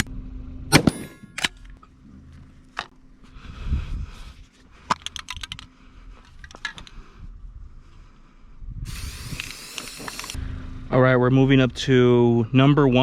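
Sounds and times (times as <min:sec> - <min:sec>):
sharp mechanical clicks: 0:08.9 - 0:10.4
steady hiss: 0:08.9 - 0:10.4.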